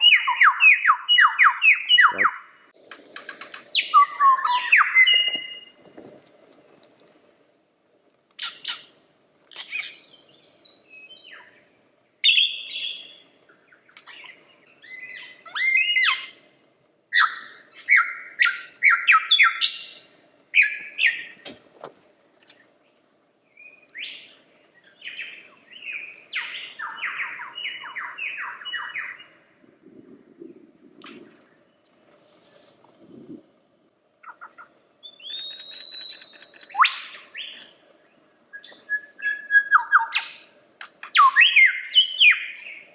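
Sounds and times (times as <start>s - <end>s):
lyrebird singing: 0.0s - 2.6s, 3.2s - 5.7s, 8.4s - 16.4s, 17.1s - 21.4s, 23.4s - 29.4s, 34.2s - 42.9s.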